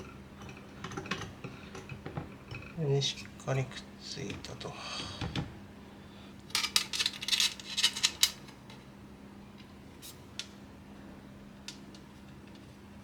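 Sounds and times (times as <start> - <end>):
computer hardware clicks and rattles: 0.0 - 2.7
faint steady hum: 0.0 - 13.0.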